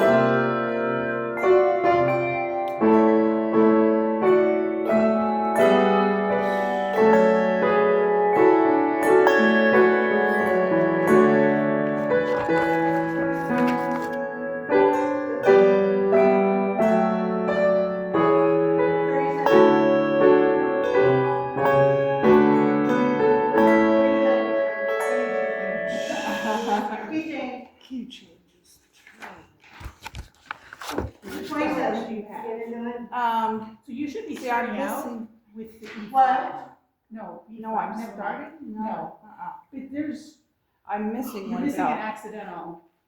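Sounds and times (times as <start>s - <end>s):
handbell choir ringing chords: 0.0s - 12.4s, 14.2s - 27.2s.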